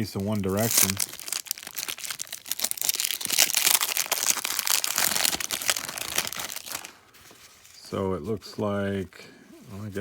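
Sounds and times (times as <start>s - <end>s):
cellophane wrapper crinkling and tearing: 0.0s - 7.0s.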